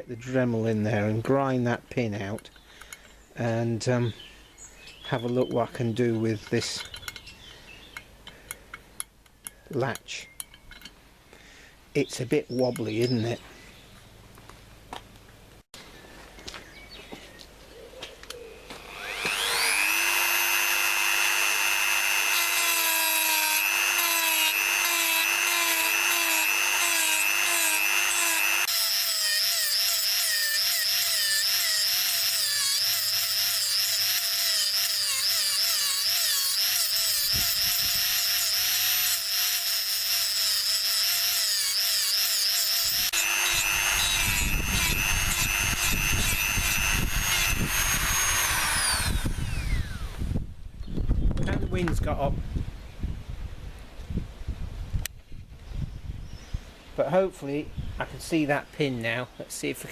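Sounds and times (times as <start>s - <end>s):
rotary tool grinding metal: 18.8s - 50.2s.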